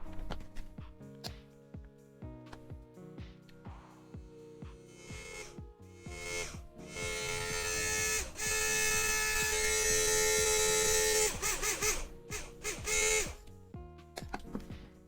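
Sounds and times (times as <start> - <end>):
background music: 0.0 - 15.0
small motor humming: 4.8 - 13.5.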